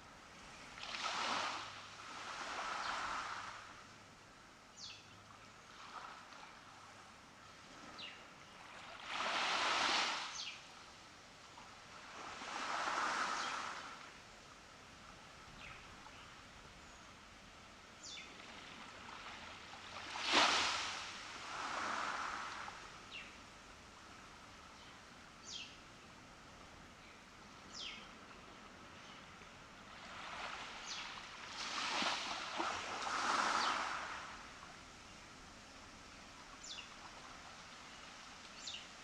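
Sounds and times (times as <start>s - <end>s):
small waves breaking on beach: 0.0s - 3.8s, 5.7s - 14.3s, 18.1s - 24.6s, 29.6s - 39.0s.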